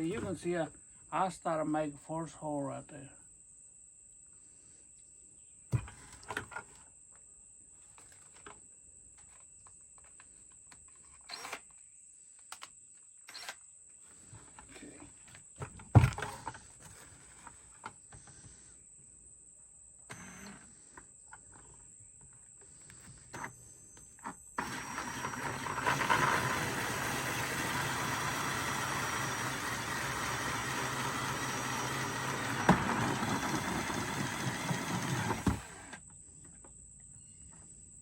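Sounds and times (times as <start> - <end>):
plastic bucket and tools clattering: 5.7 - 6.8, 32.4 - 35.8.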